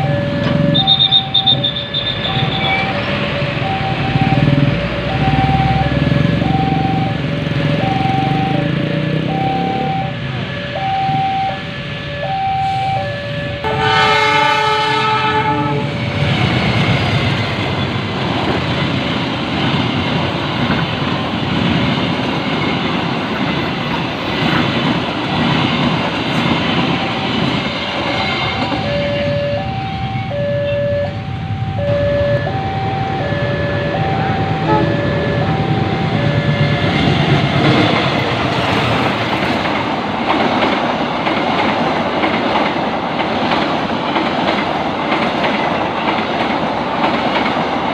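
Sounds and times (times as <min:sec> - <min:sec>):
two-note crossing warning signal: 0:00.0 - 0:15.2, 0:28.6 - 0:37.8
train horn: 0:12.2 - 0:16.0, 0:33.7 - 0:35.6
train wheels clattering: 0:36.3 - 0:47.9.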